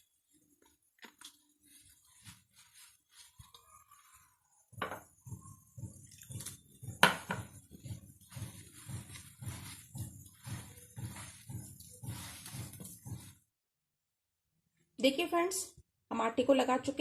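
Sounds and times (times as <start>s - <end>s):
hands kneading wet dough: 0.0s - 13.6s.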